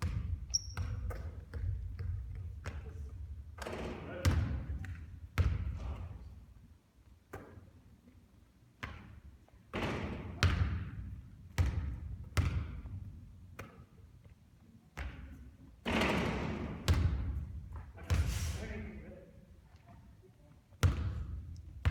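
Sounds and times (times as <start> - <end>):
basketball bouncing on court: 0.0 - 6.1, 8.8 - 14.0, 15.0 - 18.3, 20.8 - 21.9.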